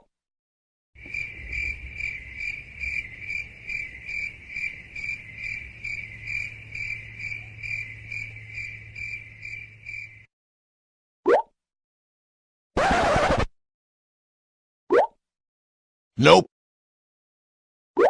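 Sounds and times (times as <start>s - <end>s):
crickets chirping: 1.0s - 10.3s.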